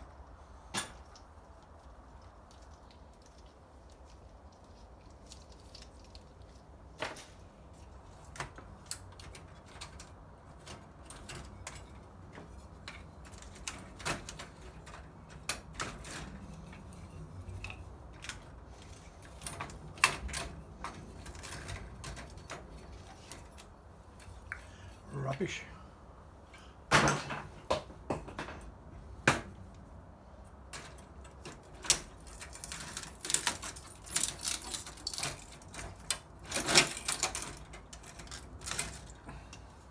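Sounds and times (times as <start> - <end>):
hand tools clicking and clinking: 30.7 - 39.7.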